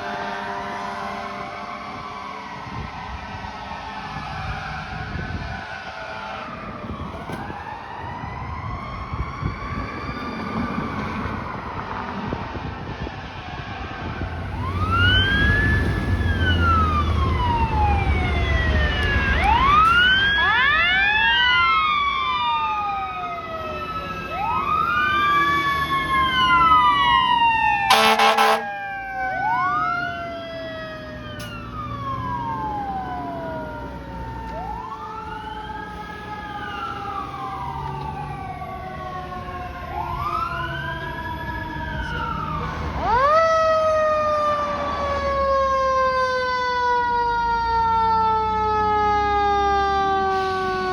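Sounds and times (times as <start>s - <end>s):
air horn blast: 0.0s - 1.8s, 27.9s - 28.7s, 50.2s - 50.9s
fire truck sirens wailing: 0.0s - 50.9s
truck engine rumble: 0.0s - 50.9s.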